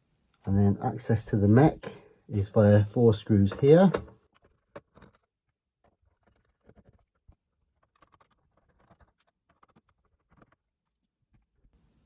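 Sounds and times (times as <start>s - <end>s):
screwdriver clicks and scratches: 7.8s - 11.1s.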